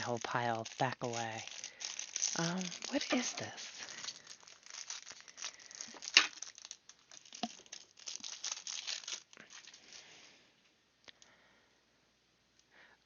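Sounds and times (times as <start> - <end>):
plastic packaging crinkling and tearing: 0.0 - 10.1.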